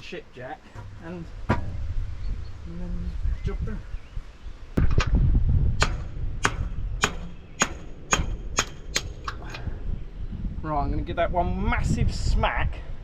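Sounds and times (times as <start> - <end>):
hammer striking steel: 5.8 - 9.3.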